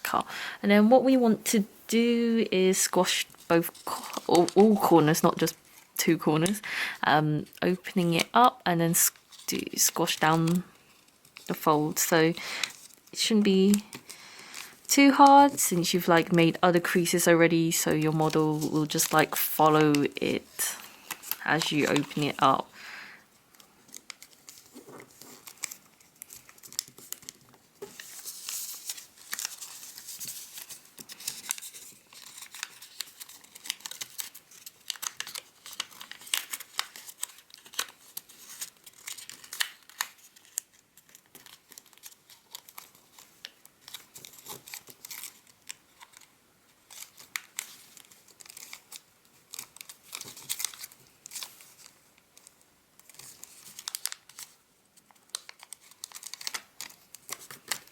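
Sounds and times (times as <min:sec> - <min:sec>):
paper crinkling and crackling: 0:02.7 - 0:22.7, 0:23.3 - 0:57.9.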